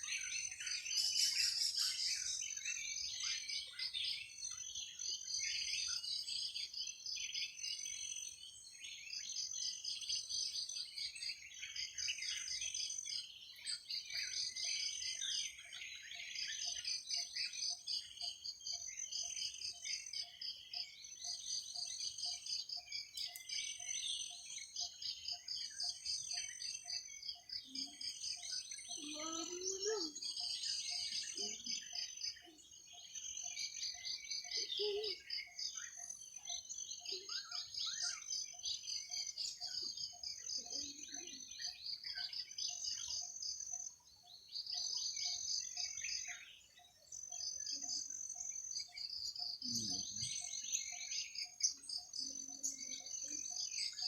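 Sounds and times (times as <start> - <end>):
birds chirping: 0.0 - 54.0
insects trilling: 22.6 - 44.0.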